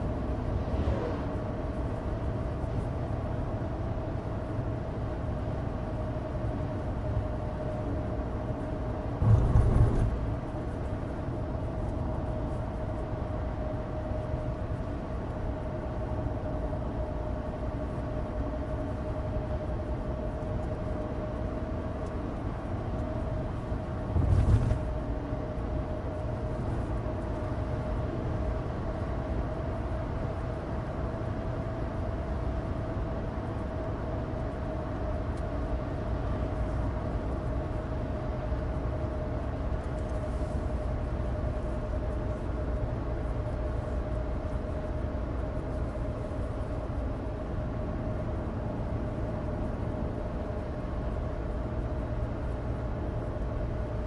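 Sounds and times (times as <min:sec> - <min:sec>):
car engine drone: 0:00.0 - 0:05.2, 0:06.0 - 0:17.0, 0:17.6 - 0:29.1
road rumble from tyres: 0:09.1 - 0:10.8, 0:24.1 - 0:25.0.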